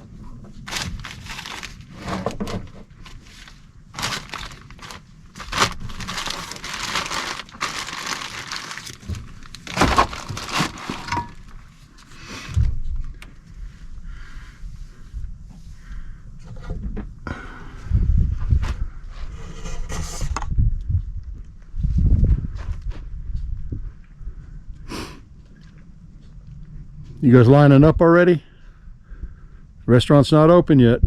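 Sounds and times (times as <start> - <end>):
dry brush crackling underfoot: 0.6 - 2.0, 2.9 - 12.0.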